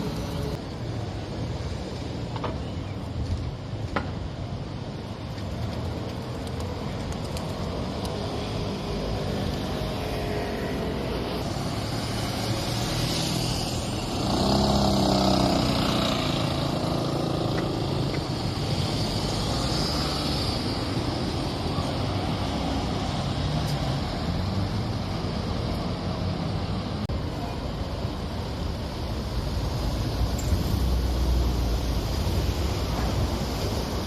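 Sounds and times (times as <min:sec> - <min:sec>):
road traffic: 0:00.0 - 0:34.0
vehicle engine passing close: 0:12.8 - 0:18.1.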